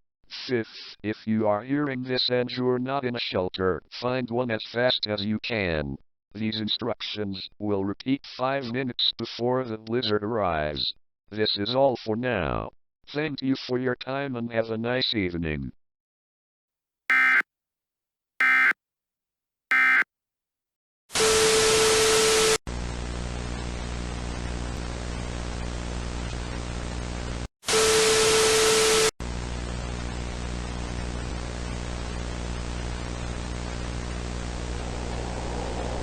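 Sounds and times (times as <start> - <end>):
static with low hum: 22.7 - 27.4, 29.3 - 36.0
white noise bursts with tone: 33.2 - 36.0.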